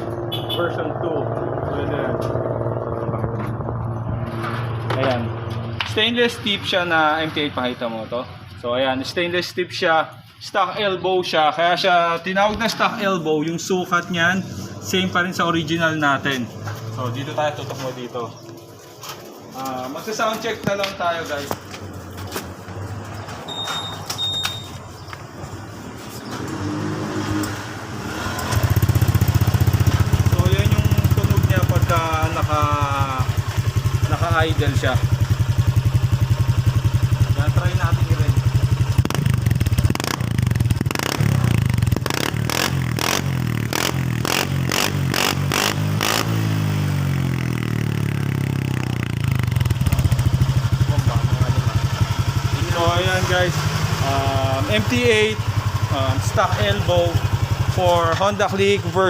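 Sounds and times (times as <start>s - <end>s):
short high electronic beeps: 23.5s - 24.9s
scooter engine starting: 26.2s - 59.0s.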